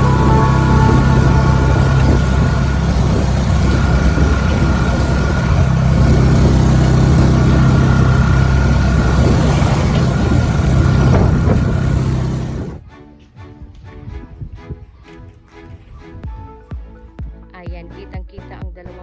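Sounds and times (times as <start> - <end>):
soft music: 0.0 - 5.7, 12.8 - 18.9
vehicle engine and road noise: 0.0 - 12.8.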